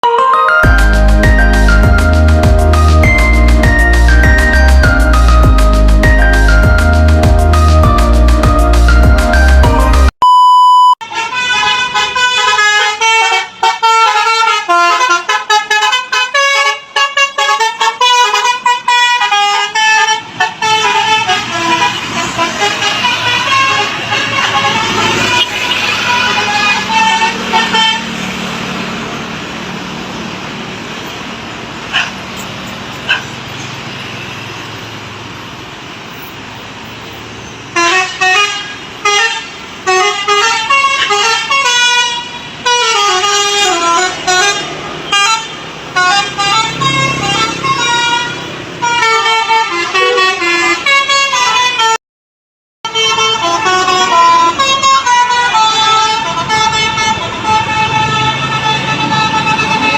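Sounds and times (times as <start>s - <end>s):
bus horn playing melodic tunes: 0.0s - 10.2s, 11.0s - 29.0s, 37.7s - 52.0s, 52.8s - 59.9s
engine and road rumble: 0.6s - 10.2s, 11.0s - 52.0s, 52.8s - 59.9s
brief beeps: 10.2s - 11.0s.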